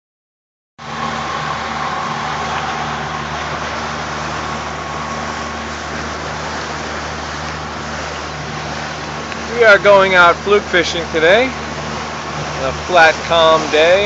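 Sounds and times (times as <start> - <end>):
motorboat engine running: 0.8 - 14.0
constant hiss: 9.2 - 14.0.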